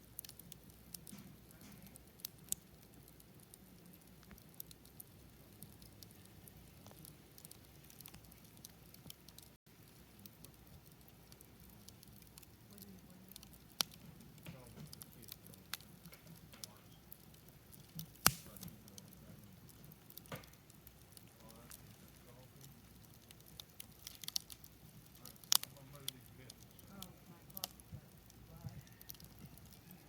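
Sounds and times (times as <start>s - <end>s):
campfire crackling and popping: 0.0s - 30.0s.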